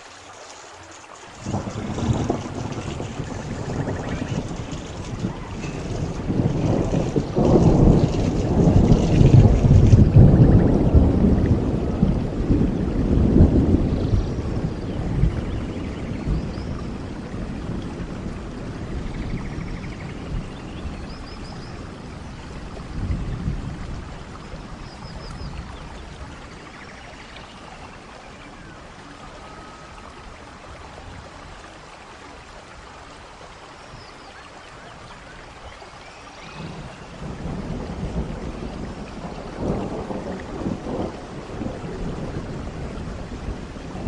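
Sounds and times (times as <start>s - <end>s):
heavy rain hissing: 0.0s - 15.7s, 20.2s - 44.0s.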